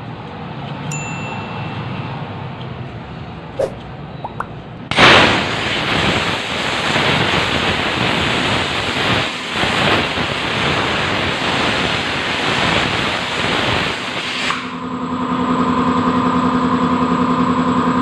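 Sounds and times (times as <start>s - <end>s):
compressed air hissing: 4.9s - 14.8s.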